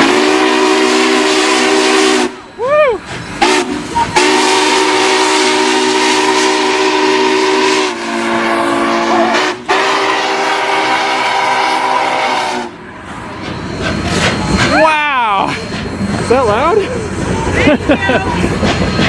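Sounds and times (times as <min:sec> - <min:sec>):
steam locomotive whistle blasts: 0:00.0 - 0:12.8.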